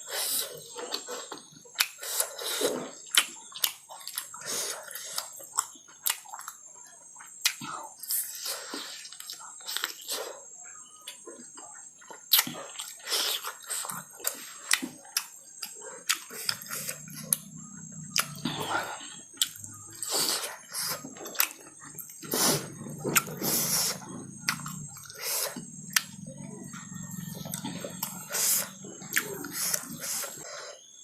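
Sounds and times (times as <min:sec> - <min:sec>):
wet chewing: 0:00.0 - 0:10.4, 0:11.0 - 0:30.6
mouth clicks: 0:19.4 - 0:30.5.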